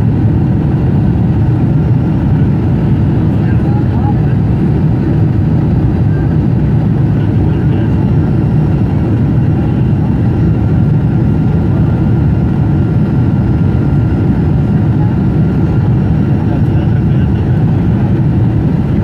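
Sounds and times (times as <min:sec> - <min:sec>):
airliner cabin engine rush: 0:00.0 - 0:19.0.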